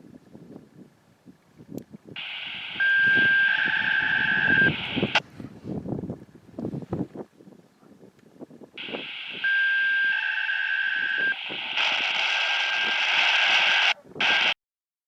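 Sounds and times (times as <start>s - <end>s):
radio static: 2.2s - 5.2s, 8.8s - 14.6s
steady single-pitch beep: 2.2s - 5.2s, 8.8s - 13.0s.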